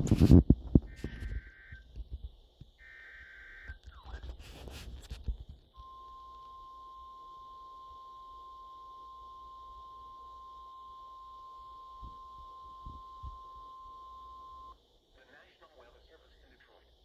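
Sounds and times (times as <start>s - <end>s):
two-tone data bursts: 0.2s - 1.9s, 2.8s - 4.7s, 5.8s - 14.8s
steady attention tone: 5.8s - 14.8s.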